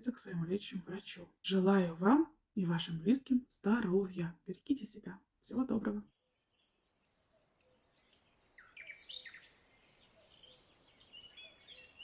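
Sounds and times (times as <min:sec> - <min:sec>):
faint bird chirping: 0:06.5 - 0:12.0.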